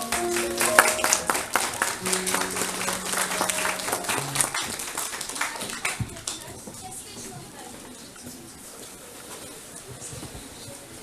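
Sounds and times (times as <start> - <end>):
instrumental music: 0.0 - 5.3
audience clapping: 0.0 - 6.8.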